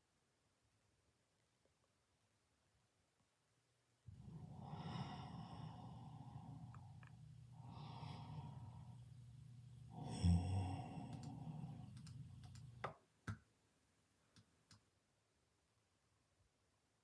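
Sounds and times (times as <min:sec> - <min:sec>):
person snoring: 0:04.2 - 0:09.1, 0:09.9 - 0:12.4.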